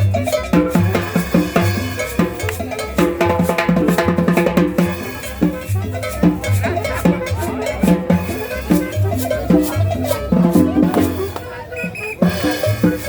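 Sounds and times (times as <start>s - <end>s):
pulsing bass line: 0.0s - 11.6s
cowbell: 0.0s - 13.0s
upbeat latin dance music: 0.0s - 13.0s.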